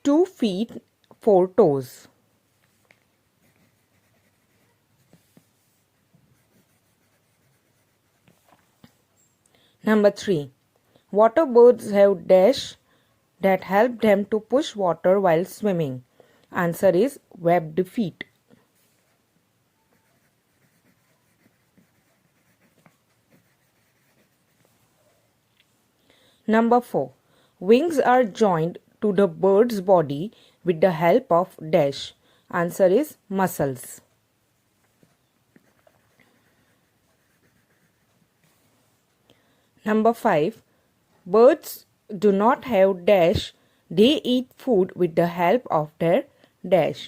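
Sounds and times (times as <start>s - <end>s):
pen scratching on paper: 3.4s - 8.4s, 19.9s - 24.8s, 35.5s - 38.3s
pen writing on paper: 20.0s - 24.6s.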